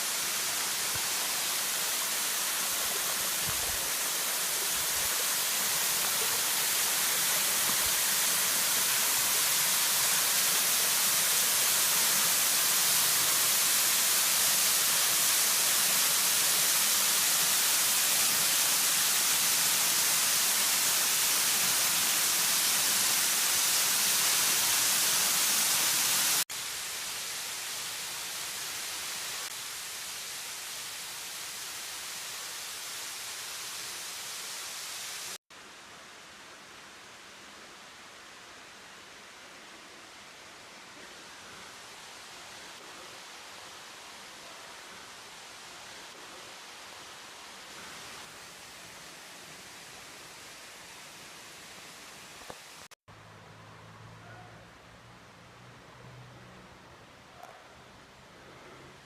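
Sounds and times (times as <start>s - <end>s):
waterfall rushing hiss: 0.0s - 53.0s.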